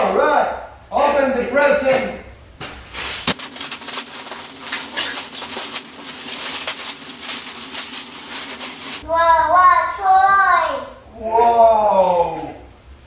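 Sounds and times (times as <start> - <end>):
wrapping paper tearing and rustling: 3.3 - 9.0.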